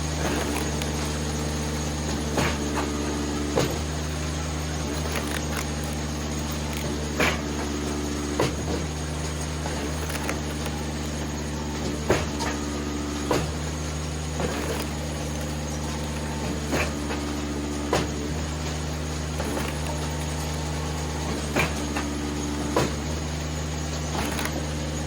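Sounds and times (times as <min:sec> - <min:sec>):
wood splitter engine hum: 0:00.0 - 0:25.0
wood knocking and cracking: 0:05.0 - 0:07.7, 0:08.4 - 0:12.6.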